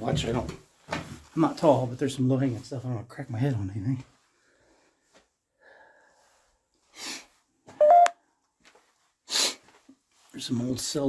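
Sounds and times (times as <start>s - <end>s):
man sniffing: 6.9s - 7.3s, 9.3s - 9.7s
phone app beep rising in pitch: 7.8s - 8.2s.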